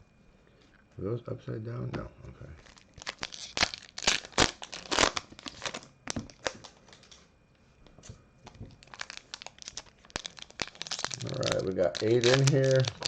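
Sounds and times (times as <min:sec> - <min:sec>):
foil wrappers crinkling and tearing: 0:02.6 - 0:07.1, 0:08.8 - 0:13.0.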